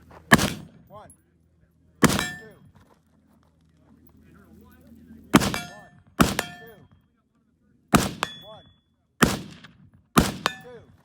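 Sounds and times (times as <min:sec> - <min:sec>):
rifle shots: 0:00.3 - 0:00.9, 0:02.0 - 0:02.6, 0:05.3 - 0:06.8, 0:07.9 - 0:08.6, 0:09.2 - 0:10.8
steel target ringing: 0:02.0 - 0:02.6, 0:05.4 - 0:06.9, 0:08.1 - 0:08.7, 0:10.4 - 0:10.8.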